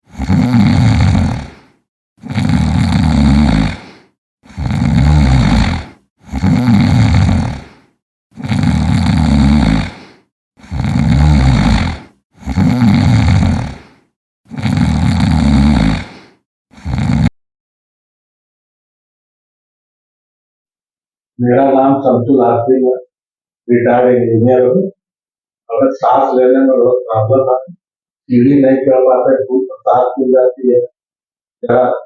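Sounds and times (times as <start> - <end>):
person snoring: 0.0 - 17.3.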